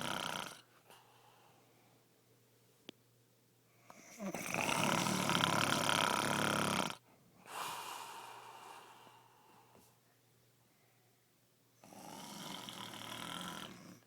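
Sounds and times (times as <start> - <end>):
man snoring loudly: 0.0 - 0.6, 4.2 - 7.0, 11.8 - 14.0
soft breath: 0.8 - 2.1, 7.0 - 11.3.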